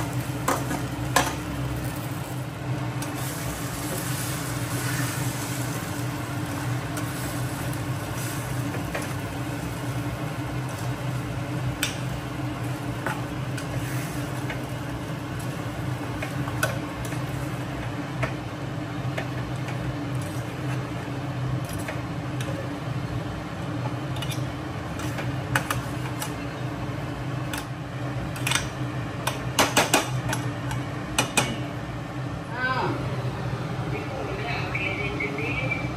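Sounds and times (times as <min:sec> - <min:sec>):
steady low hum: 0:00.0 - 0:35.9
utensils and pot clinking: 0:24.1 - 0:26.5.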